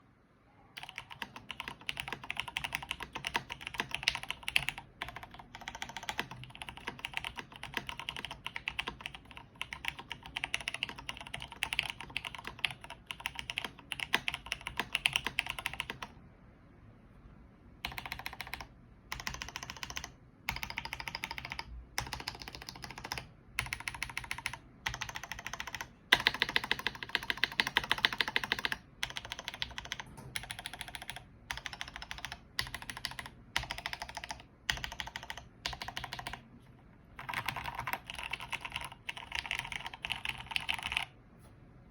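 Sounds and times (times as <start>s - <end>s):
mechanical keyboard typing: 0.8s - 16.2s, 17.8s - 36.4s, 37.2s - 41.2s.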